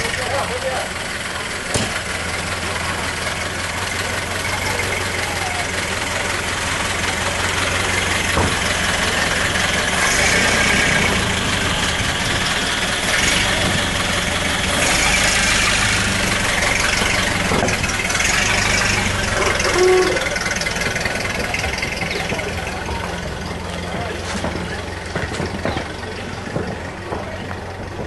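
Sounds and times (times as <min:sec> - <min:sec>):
voices in the background: 0:00.0 - 0:11.0, 0:16.4 - 0:28.0
car engine idling: 0:00.0 - 0:28.0
short pitched sound: 0:19.0 - 0:20.6.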